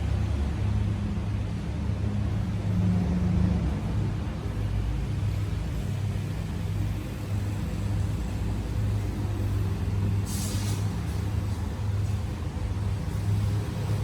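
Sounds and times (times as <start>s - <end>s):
brief hiss: 10.2s - 11.2s.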